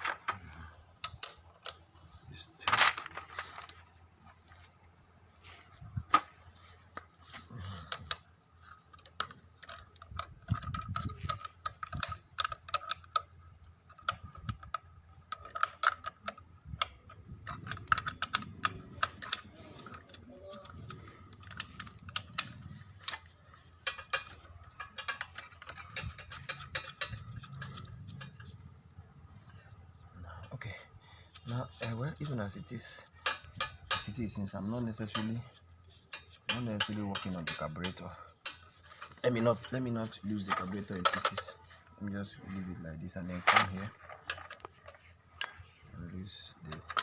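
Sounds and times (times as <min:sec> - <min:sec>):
small metal clicks and clinks: 0:07.7 - 0:28.6, 0:29.4 - 0:42.0, 0:46.6 - 0:47.0.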